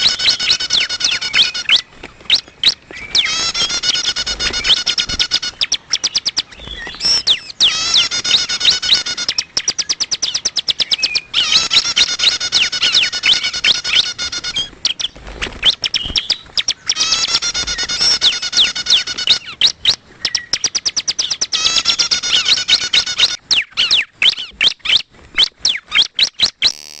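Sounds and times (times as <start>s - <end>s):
bird chirping: 0.0s - 26.9s
sharp bird notes: 3.0s - 9.7s.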